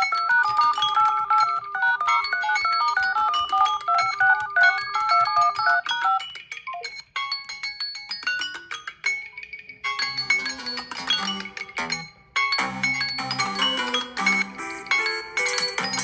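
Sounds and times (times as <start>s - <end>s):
electronic phone ringtone: 1.3s - 7.0s, 13.2s - 16.0s.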